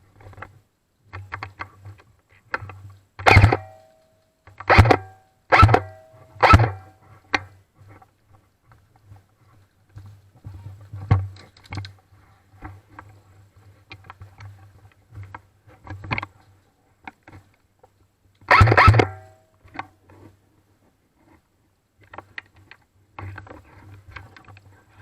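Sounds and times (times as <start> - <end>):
airsoft rifle firing bursts: 3.2 - 3.8, 4.7 - 6.9, 18.5 - 19.3.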